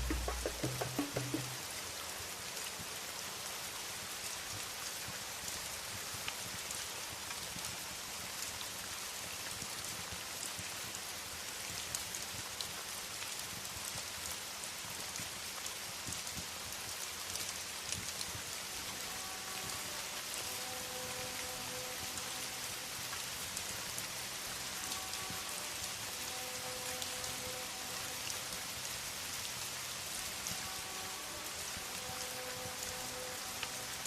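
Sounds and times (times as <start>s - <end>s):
faint held music notes: 0.0s - 1.7s
steady rain falling: 0.0s - 34.0s.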